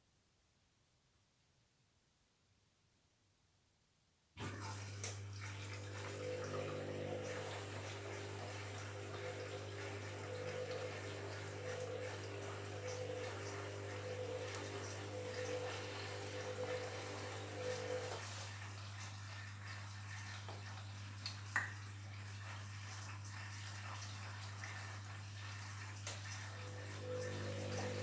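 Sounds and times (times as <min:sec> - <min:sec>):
washing machine hum: 0:04.4 - 0:28.0
water sloshing in washing machine drum: 0:04.4 - 0:28.0.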